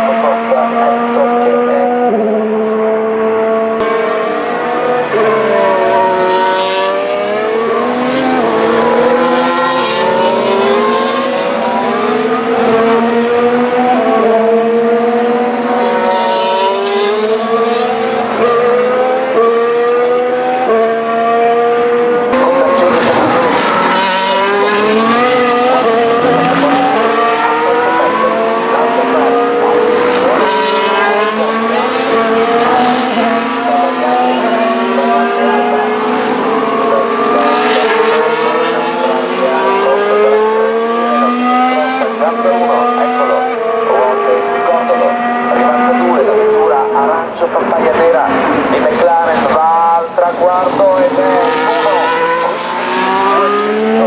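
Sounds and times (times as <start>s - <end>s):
racing cars passing: 0.0s - 54.0s.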